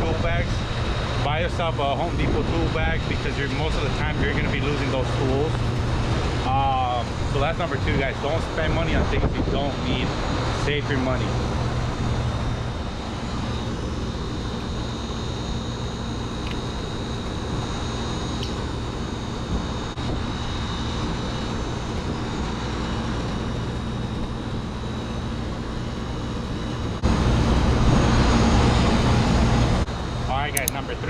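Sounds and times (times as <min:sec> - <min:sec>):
faint high whine: 0:00.0 - 0:27.0
vehicle engine drone: 0:09.8 - 0:28.0.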